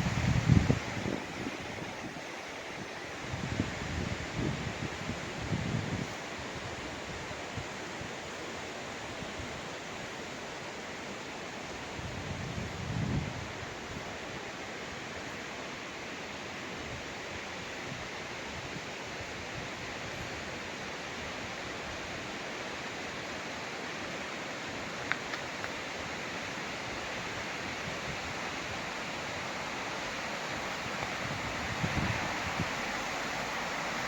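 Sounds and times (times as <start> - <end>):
stream rushing over rocks: 13.5 - 34.0.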